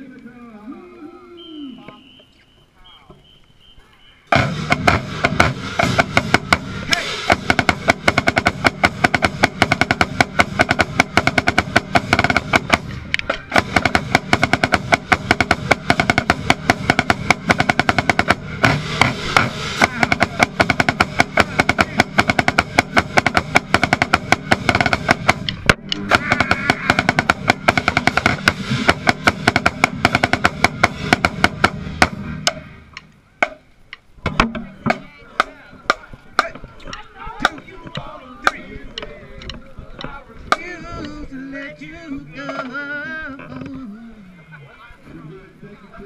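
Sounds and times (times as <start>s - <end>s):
marching band playing: 3.3s - 33.6s, 34.2s - 43.0s
snare drums rapid strokes: 4.3s - 33.6s.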